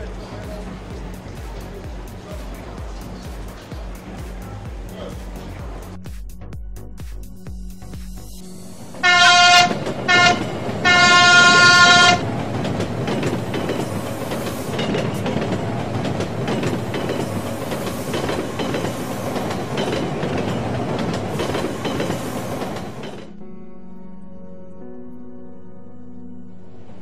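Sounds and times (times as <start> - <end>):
train rumbling over rail joints: 0.0 - 6.0, 8.9 - 23.3
train horn blasts: 9.0 - 12.4.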